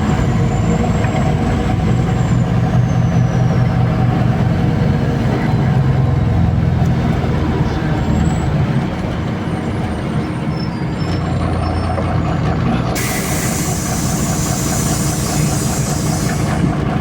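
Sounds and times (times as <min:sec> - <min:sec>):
bus engine droning: 0:00.0 - 0:17.0
compressed air hissing: 0:13.0 - 0:16.7.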